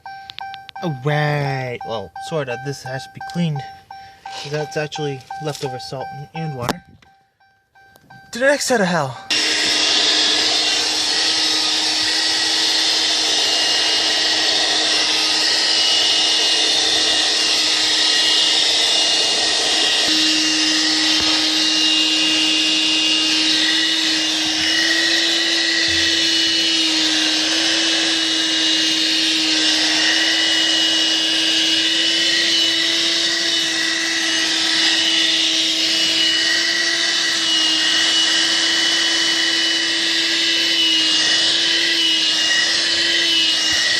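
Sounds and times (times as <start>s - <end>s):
car vacuum running: 9.3s - 43.9s.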